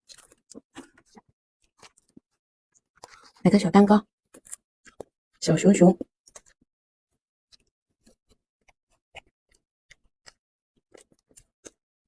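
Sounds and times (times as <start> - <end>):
chewing mouth sounds: 7.5 - 11.8.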